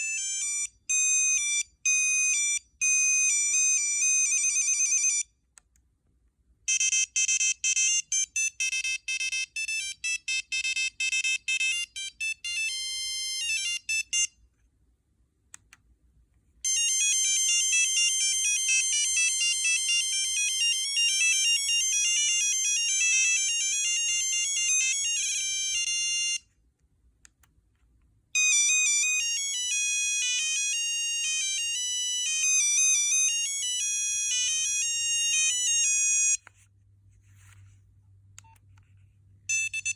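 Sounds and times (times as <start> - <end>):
phone ringtone melodies: 0.0 - 5.3, 6.7 - 14.4, 16.7 - 26.4, 28.4 - 36.4, 39.5 - 39.9.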